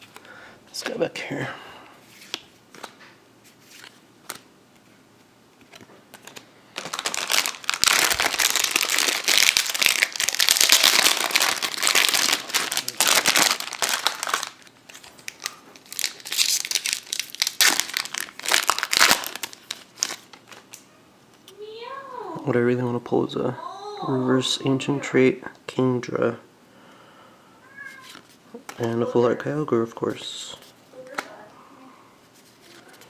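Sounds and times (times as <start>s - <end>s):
foil wrapper crinkling: 5.7s - 20.8s.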